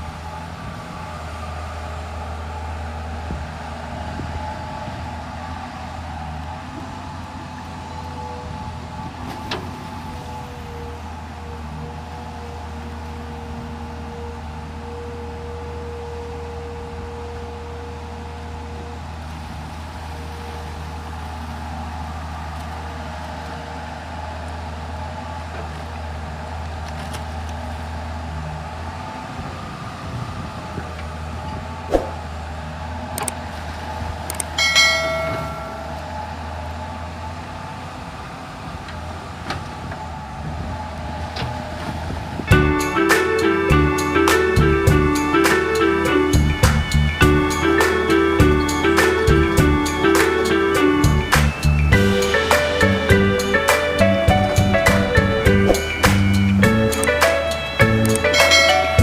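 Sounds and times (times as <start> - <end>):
excavator diesel engine running: 0.0 - 59.0
short metallic ring: 34.6 - 36.0.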